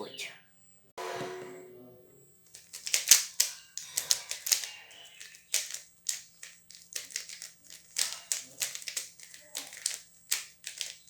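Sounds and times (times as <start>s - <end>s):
puzzle cube clicking as turned: 2.5s - 11.0s.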